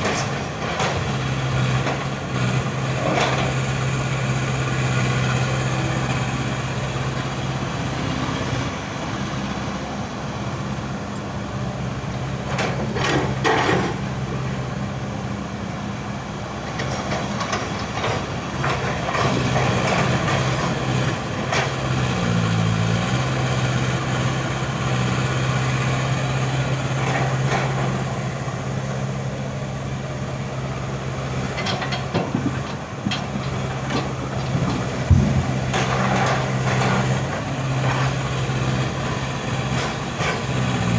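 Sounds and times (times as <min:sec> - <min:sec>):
excavator diesel engine running: 0:00.0 - 0:40.9
harsh scraping and clanking: 0:31.4 - 0:39.0.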